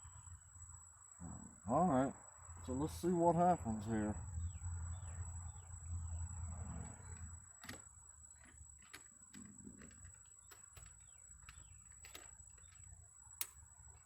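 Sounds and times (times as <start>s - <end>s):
faint chirps: 0.0s - 7.3s
plastic parts clicking: 7.6s - 14.0s.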